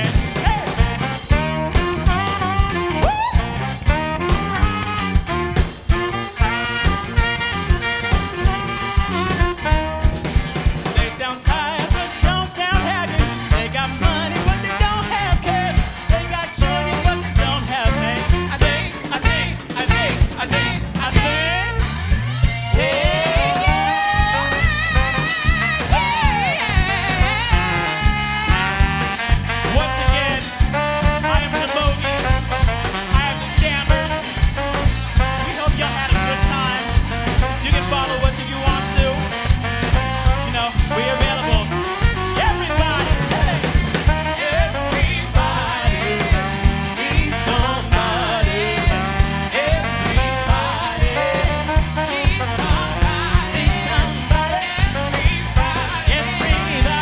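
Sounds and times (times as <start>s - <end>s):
bass guitar: 0.0s - 57.0s
drum kit beat: 0.0s - 57.0s
guitar: 0.0s - 57.0s
saxophone: 0.0s - 57.0s
person singing: 22.6s - 57.0s.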